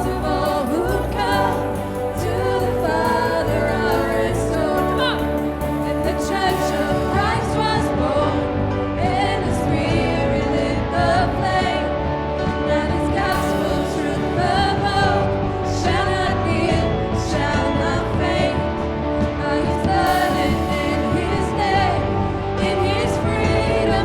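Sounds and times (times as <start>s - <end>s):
person singing: 0.0s - 11.9s, 19.4s - 24.0s
worship band playing: 0.0s - 24.0s.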